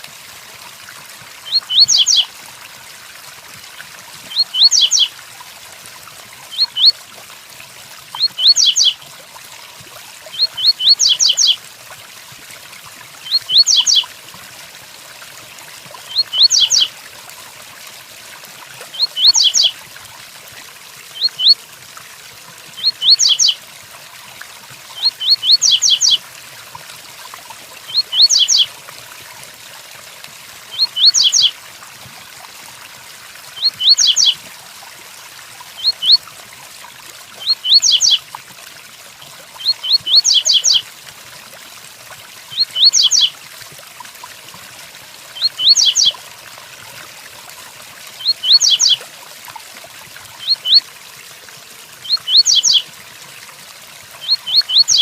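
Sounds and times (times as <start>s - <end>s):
rain hiss: 0.0s - 9.0s.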